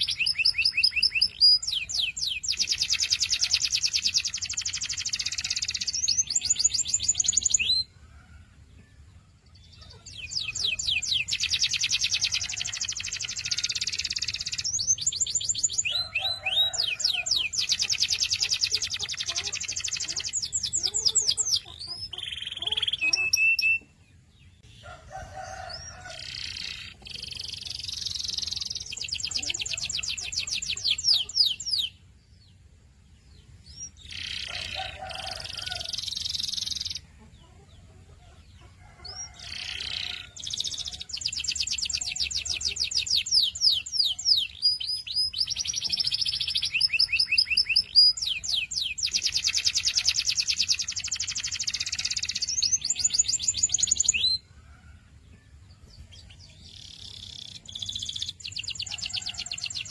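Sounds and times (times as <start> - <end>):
canary singing: 0.0 - 8.0, 9.5 - 24.0, 24.6 - 32.0, 33.4 - 37.6, 38.2 - 54.8, 55.8 - 59.9.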